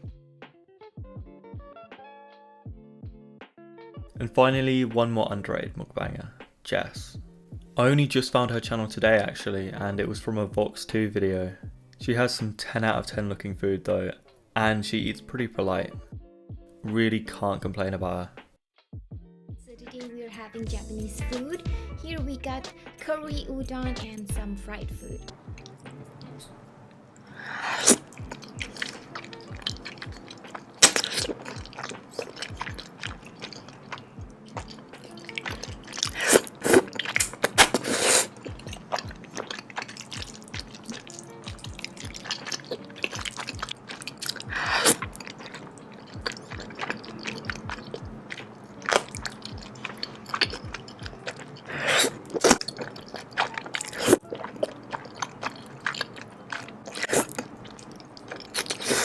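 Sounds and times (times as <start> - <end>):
soft background music: 0.0 - 59.0
chewing: 25.5 - 26.4, 27.2 - 59.0
crunchy bites into fried food: 27.7 - 59.0.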